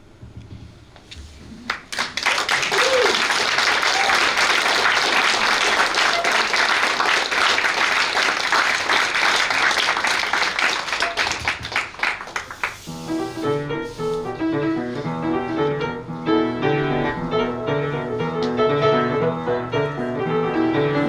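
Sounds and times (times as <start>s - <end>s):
audience applauding: 1.5s - 12.9s
piano playing: 3.6s - 21.0s.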